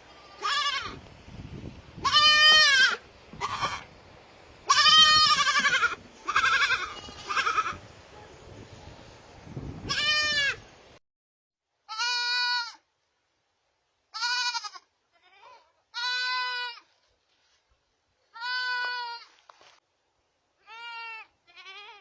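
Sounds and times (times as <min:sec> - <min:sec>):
baby goat bleating: 0:00.2 - 0:01.0, 0:02.0 - 0:03.9, 0:04.7 - 0:07.8, 0:09.9 - 0:10.6, 0:11.8 - 0:12.9, 0:14.1 - 0:16.9, 0:18.3 - 0:19.4, 0:20.6 - 0:22.0.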